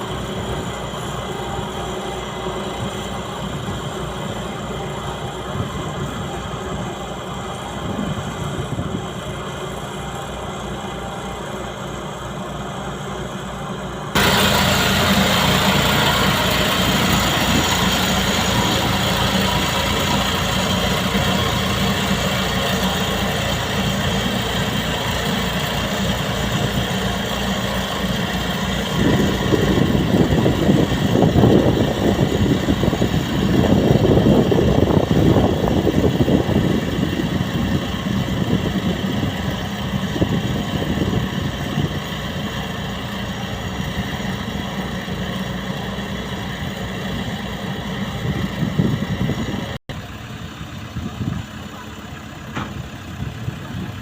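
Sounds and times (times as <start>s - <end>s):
skid steer engine running: 0.0s - 54.0s.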